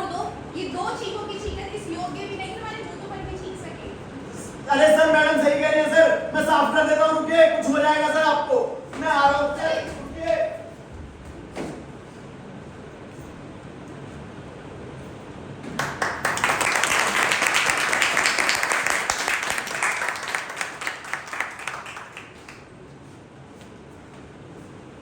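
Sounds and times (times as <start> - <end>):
audience applauding: 15.8 - 22.7.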